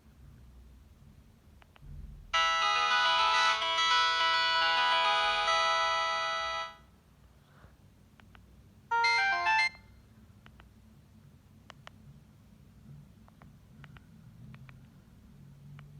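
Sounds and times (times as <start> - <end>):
phone ringtone melody: 2.4 - 6.8, 8.9 - 9.9.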